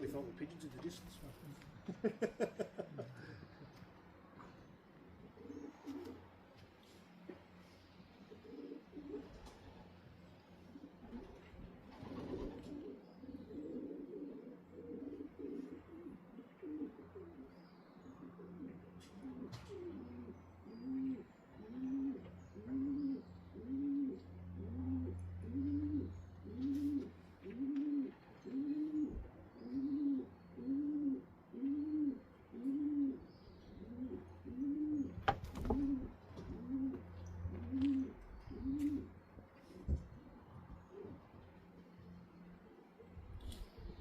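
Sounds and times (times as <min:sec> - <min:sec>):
pigeon cooing: 0:04.4 - 0:06.4, 0:08.2 - 0:09.9, 0:10.6 - 0:41.4
small birds chirping: 0:17.4 - 0:24.3, 0:28.0 - 0:30.9, 0:31.6 - 0:44.0.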